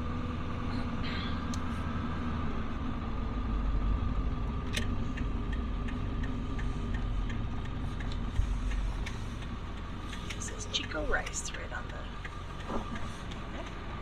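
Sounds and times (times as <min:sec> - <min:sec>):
truck engine low rumble: 0:00.0 - 0:14.0
light regular ticks: 0:04.8 - 0:14.0.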